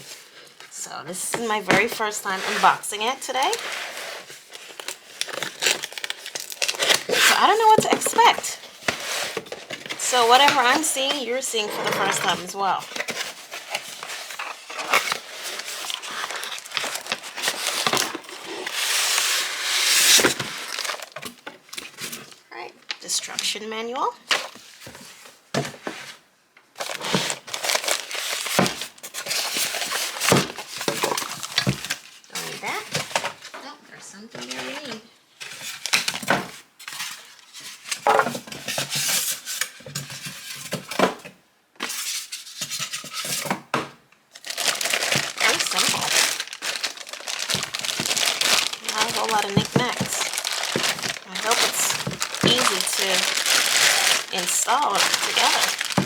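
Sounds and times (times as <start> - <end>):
packaging rustling and crinkling: 0.0 - 23.0, 24.2 - 33.6, 34.3 - 56.0
packing material tearing: 2.0 - 22.4, 26.8 - 32.9, 44.3 - 56.0.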